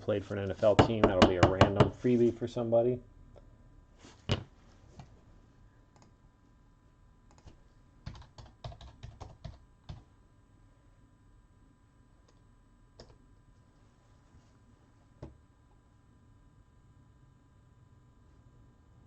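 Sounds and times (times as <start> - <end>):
typing on computer keyboard: 7.3 - 10.0.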